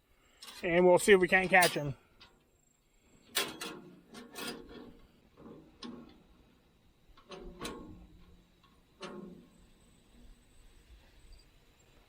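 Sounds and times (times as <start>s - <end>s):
cage trap knocks and rattles: 3.3s - 6.5s, 7.2s - 10.2s.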